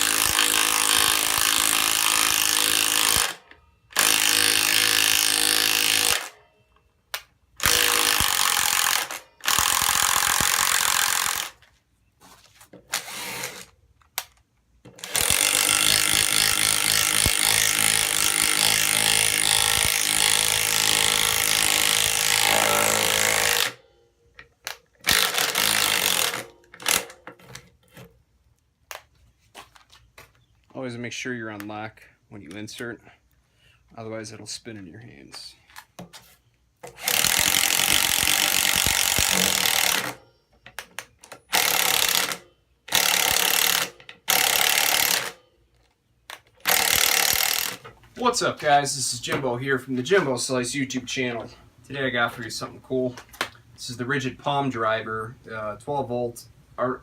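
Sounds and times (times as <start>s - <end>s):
impact driver driving screws: 0.0s - 6.4s, 7.6s - 11.6s, 12.9s - 14.3s, 14.9s - 23.8s, 24.7s - 28.1s, 36.8s - 40.2s, 40.8s - 45.4s, 46.3s - 47.9s.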